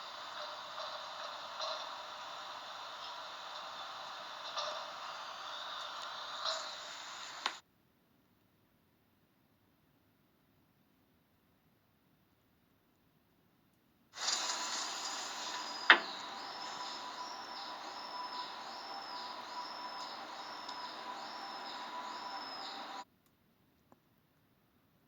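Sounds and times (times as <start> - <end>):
faint steady tone: 0.0 - 7.6, 14.2 - 23.0
high chirping call: 14.2 - 23.0.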